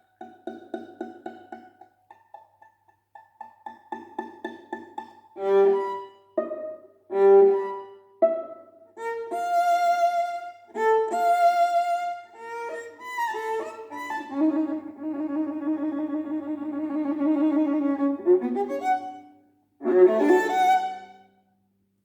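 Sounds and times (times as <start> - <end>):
violin playing: 5.4 - 21.3.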